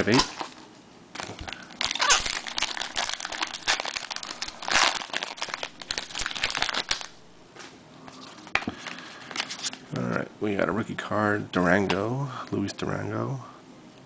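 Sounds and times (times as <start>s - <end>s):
crinkling card packs: 0.0s - 7.2s, 8.1s - 10.2s.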